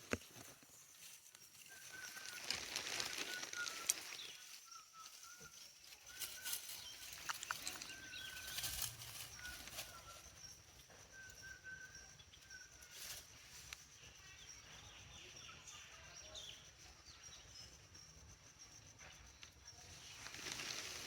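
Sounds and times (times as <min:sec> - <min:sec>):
short chirping calls: 0:01.0 - 0:13.4.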